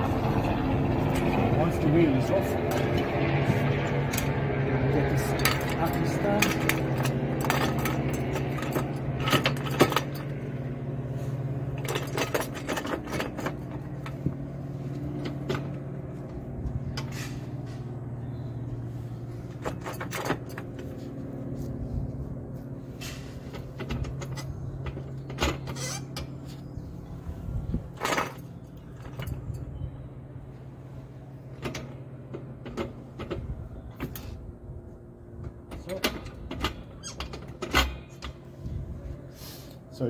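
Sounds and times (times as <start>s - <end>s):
metal clanks of axle stand: 5.2s - 10.6s, 11.6s - 17.9s, 19.5s - 21.1s, 23.0s - 26.7s, 35.4s - 38.8s.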